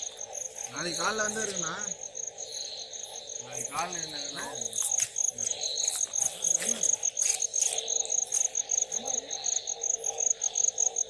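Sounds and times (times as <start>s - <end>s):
cricket chirping: 0.0s - 11.0s
faint voices: 3.4s - 7.9s.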